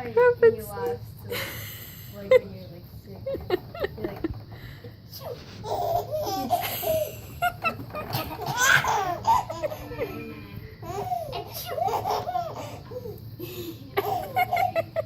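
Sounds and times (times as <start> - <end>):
baby laughing: 5.2 - 10.2, 10.8 - 13.2, 14.0 - 15.0.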